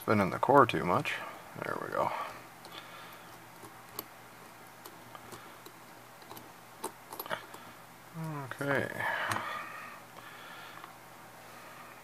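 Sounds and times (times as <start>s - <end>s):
metal lock parts clicking: 2.6s - 4.1s, 4.8s - 7.6s.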